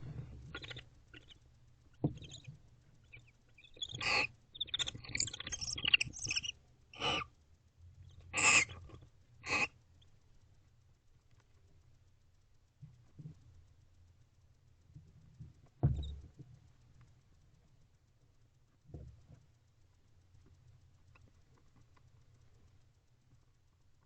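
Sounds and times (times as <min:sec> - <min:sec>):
high twittering chirps: 0:00.5 - 0:01.4, 0:02.0 - 0:07.2
owls hissing calls: 0:00.5 - 0:01.4, 0:02.1 - 0:07.3, 0:08.2 - 0:09.8.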